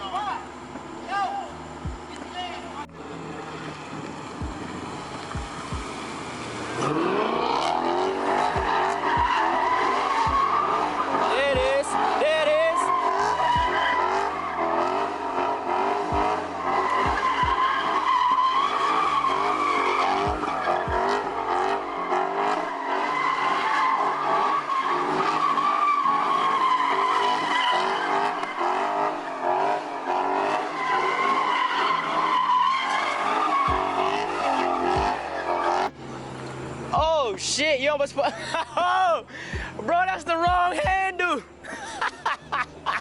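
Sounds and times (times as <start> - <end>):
tires squealing: 0.0 - 43.0
car engine revving hard: 2.9 - 37.0.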